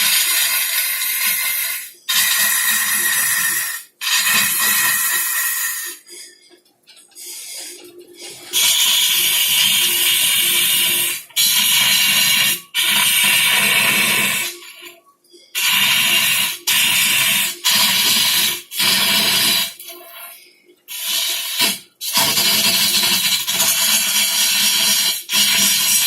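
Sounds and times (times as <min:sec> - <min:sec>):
lathe tool shaving wood: 0:00.0 - 0:06.0.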